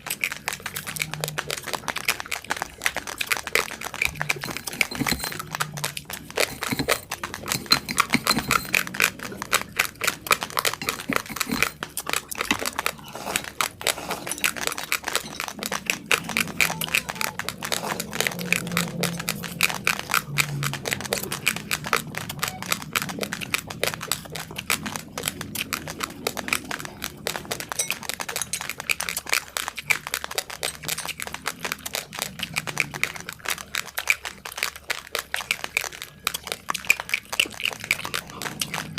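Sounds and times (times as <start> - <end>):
rice being chewed: 0.0 - 38.9.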